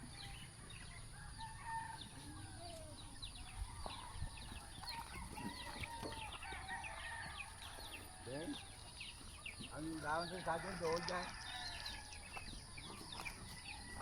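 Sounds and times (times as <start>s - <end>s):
chickens clucking: 0.0s - 14.0s
rooster crowing: 0.9s - 3.0s, 5.1s - 8.5s, 10.0s - 12.3s.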